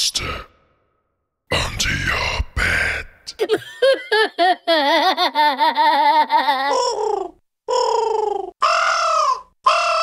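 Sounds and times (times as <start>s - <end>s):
voice-like trembling warble: 6.4s - 10.0s.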